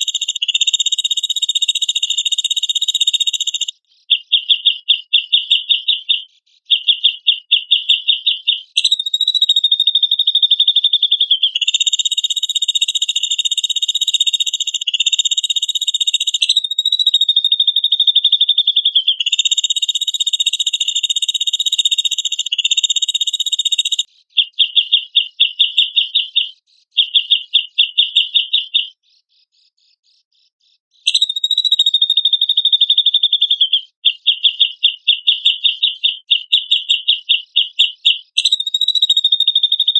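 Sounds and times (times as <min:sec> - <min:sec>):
bird rattling trills: 0:00.0 - 0:05.9, 0:07.0 - 0:28.2, 0:31.1 - 0:33.1, 0:34.0 - 0:39.9.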